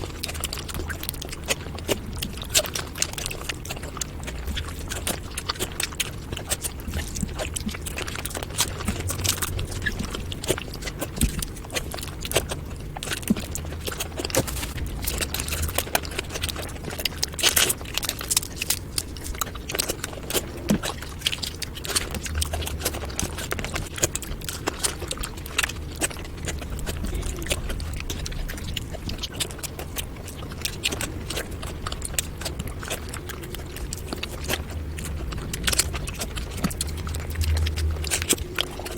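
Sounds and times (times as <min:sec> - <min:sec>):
chewing clicks and smacks: 0:00.0 - 0:38.9
low hum: 0:21.0 - 0:38.9.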